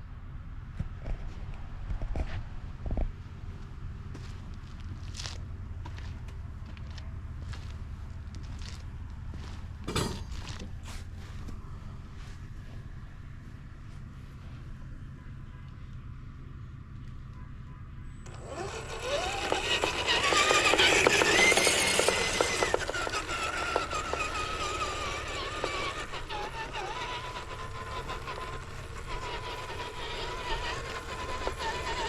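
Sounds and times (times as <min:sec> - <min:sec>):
toy truck motor whining: 0:18.2 - 0:32.0.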